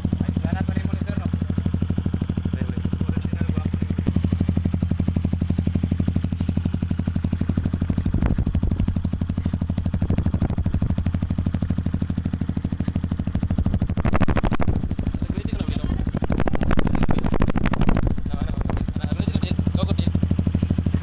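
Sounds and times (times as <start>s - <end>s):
motorcycle engine idling: 0.0s - 21.0s.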